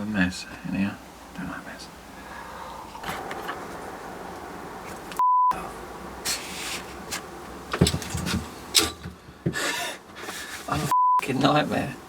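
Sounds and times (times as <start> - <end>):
censor bleep: 5.2 - 5.6
knocks and clatter: 7.1 - 9.6.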